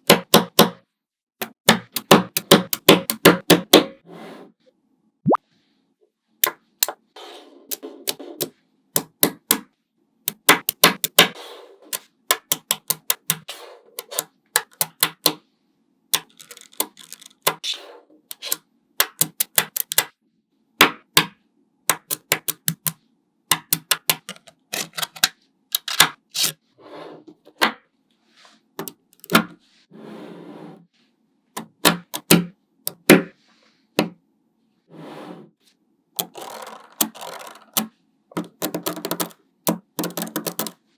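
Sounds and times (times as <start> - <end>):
magnetic balls clicking together: 10.3 - 15.4, 16.2 - 17.6, 18.3 - 20.1, 21.9 - 24.5, 36.2 - 40.8.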